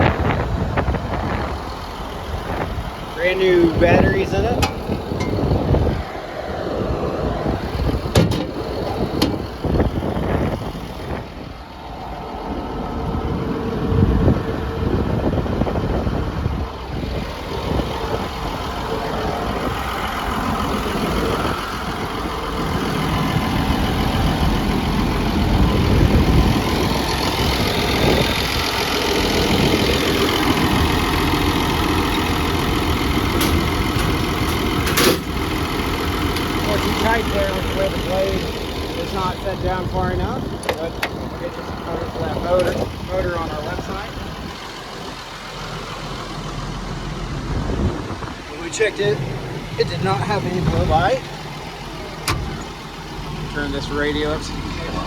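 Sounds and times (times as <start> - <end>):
bulldozer diesel engine idling: 0.0 - 55.0.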